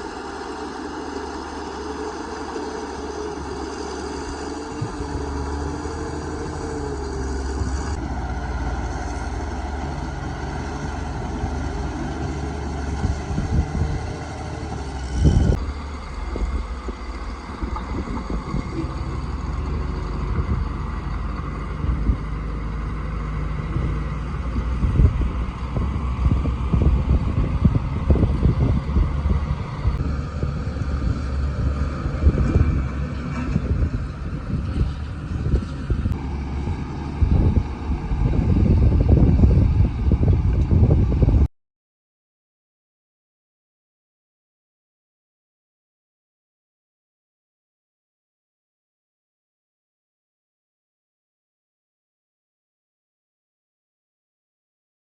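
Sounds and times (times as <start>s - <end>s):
bulldozer diesel engine: 0.0s - 41.5s
clanks and knocks of tracks and rock: 15.4s - 20.7s.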